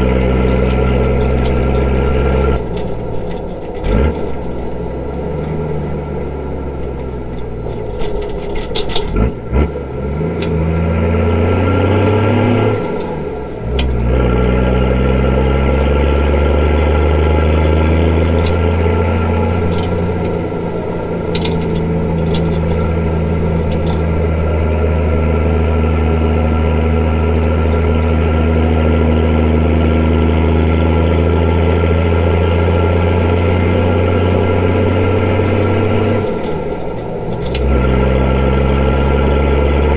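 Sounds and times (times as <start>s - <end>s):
diesel engine pulling: 0.0s - 39.9s
sharp clicks: 36.1s - 38.0s.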